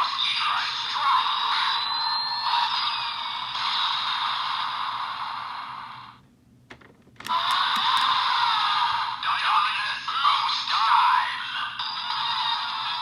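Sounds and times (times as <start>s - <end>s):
plastic clicks: 6.7s - 8.1s.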